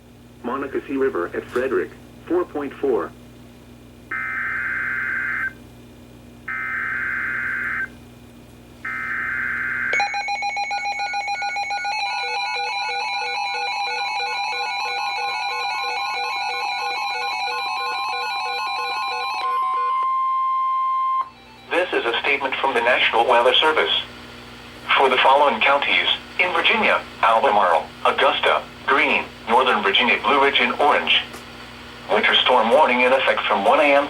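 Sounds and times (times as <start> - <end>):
electronic beeping alarms: 4.1 - 5.6, 6.5 - 8.0, 8.8 - 21.7.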